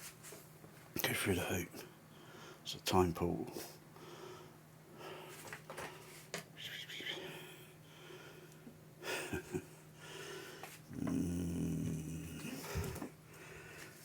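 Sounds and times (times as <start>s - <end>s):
faint low hum: 0.7s - 14.0s
low hummed sound: 6.6s - 14.0s.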